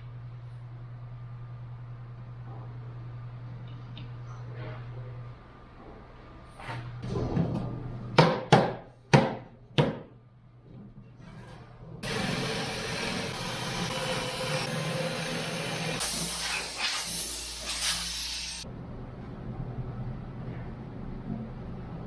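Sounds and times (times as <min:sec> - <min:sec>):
sharp knocks on wood: 0:08.2 - 0:10.1
tool hissing: 0:12.0 - 0:18.6.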